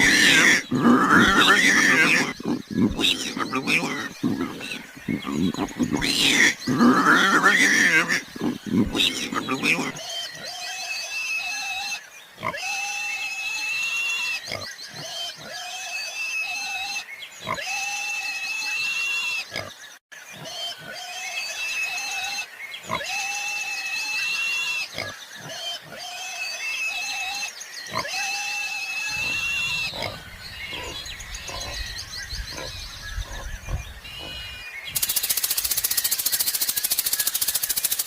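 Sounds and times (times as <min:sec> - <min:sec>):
animal high-pitched squeals: 0:00.0 - 0:11.9, 0:28.0 - 0:31.8.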